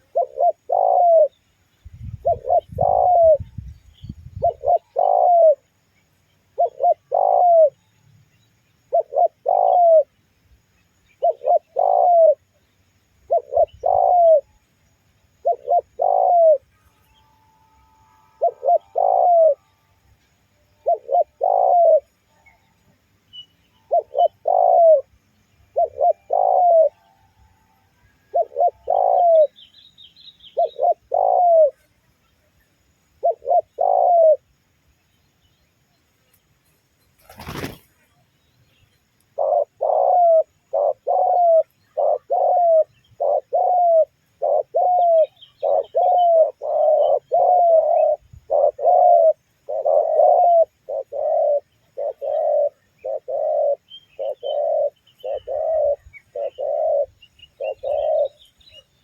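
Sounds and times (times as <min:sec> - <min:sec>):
dove cooing: 0:00.0 - 0:01.4, 0:02.1 - 0:03.6, 0:04.4 - 0:05.7, 0:06.5 - 0:07.8, 0:08.9 - 0:10.1, 0:11.2 - 0:12.6, 0:13.2 - 0:14.5, 0:15.3 - 0:16.7, 0:18.3 - 0:19.7, 0:20.8 - 0:22.2, 0:23.8 - 0:27.2, 0:28.2 - 0:29.6, 0:30.6 - 0:31.8, 0:33.2 - 0:34.6, 0:39.3 - 0:58.9.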